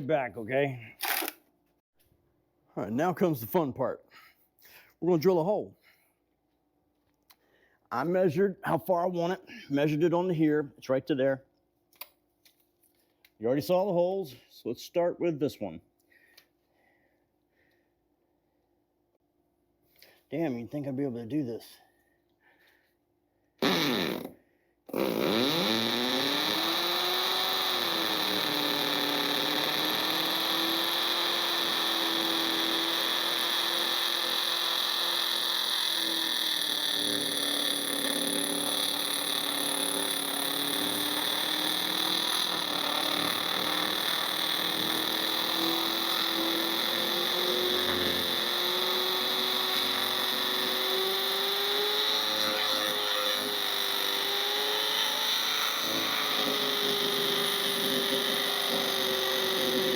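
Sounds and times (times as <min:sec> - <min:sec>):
electric drill boring into floor: 0:23.6 - 0:59.9.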